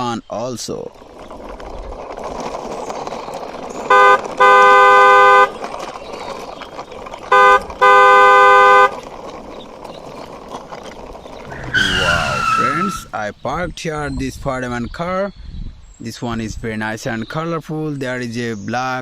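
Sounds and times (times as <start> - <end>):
toy car rolling: 0.0 - 13.2
car horn honking: 3.9 - 5.5, 7.3 - 8.9.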